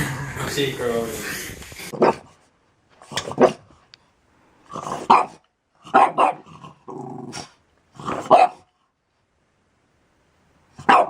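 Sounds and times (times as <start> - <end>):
dog barking and growling: 1.8 - 3.8, 4.7 - 8.8, 10.7 - 11.0.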